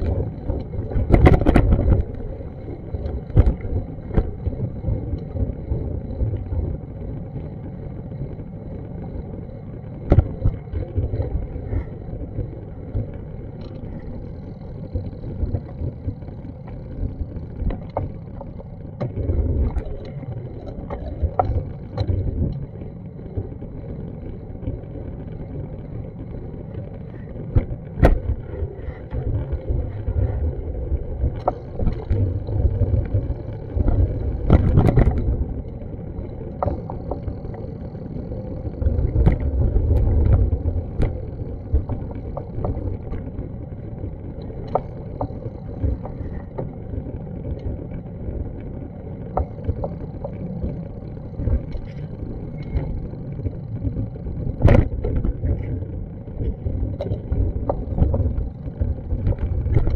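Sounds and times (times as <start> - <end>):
wind on microphone: 0.0 - 6.9, 26.9 - 59.9.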